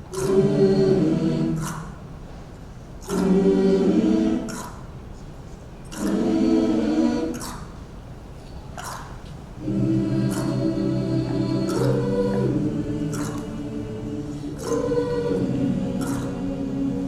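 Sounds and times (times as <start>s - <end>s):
choir singing held chords: 0.0s - 2.1s, 3.0s - 5.0s, 5.9s - 7.8s, 9.6s - 17.0s.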